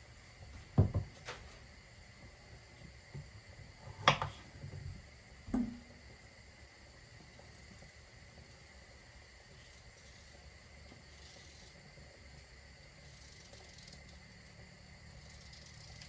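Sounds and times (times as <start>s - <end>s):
soft knocks: 0.7s - 1.2s.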